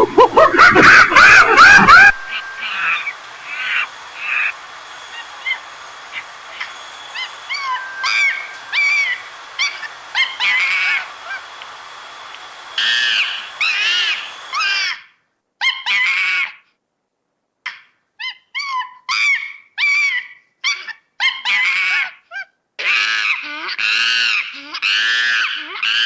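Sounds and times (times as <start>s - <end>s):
monkeys squeaky calls: 0.0s - 15.0s, 22.8s - 26.0s
faint steady hiss: 0.0s - 15.6s.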